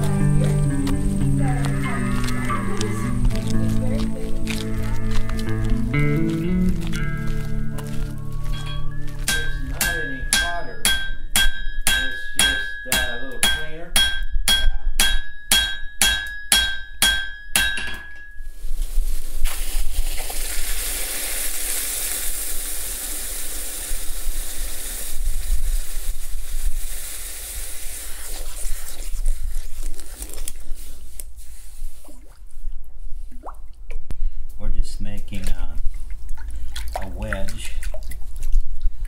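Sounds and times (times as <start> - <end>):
hammer ringing on anvil: 8.5 - 18.4
long steady hiss: 18.5 - 29.6.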